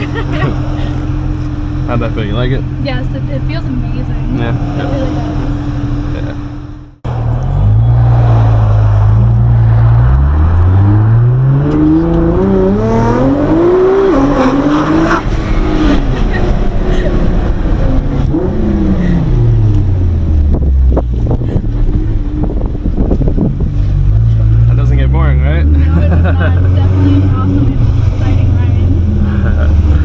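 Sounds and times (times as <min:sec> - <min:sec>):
car engine idling and revving: 0:00.0 - 0:30.0.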